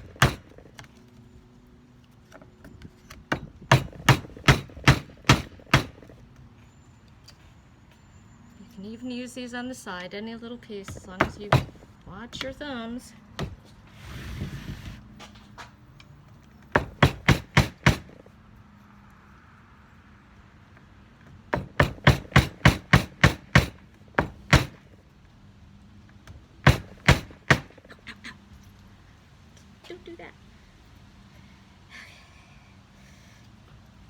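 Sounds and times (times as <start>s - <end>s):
hammer tapping on wood: 16.7s - 18.2s, 21.5s - 24.8s.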